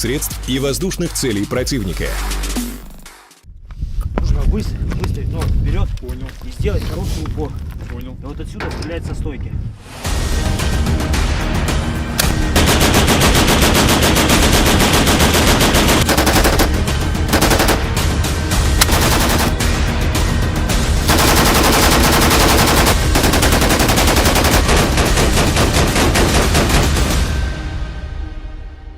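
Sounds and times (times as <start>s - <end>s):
machine gun firing bursts: 12.5s - 18.0s, 18.8s - 19.6s, 21.1s - 27.0s.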